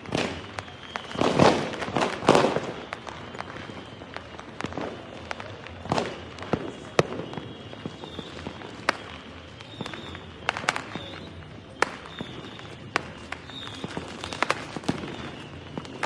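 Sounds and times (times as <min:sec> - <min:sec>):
fireworks bangs: 0:00.0 - 0:16.0
fireworks whistles: 0:00.0 - 0:16.0.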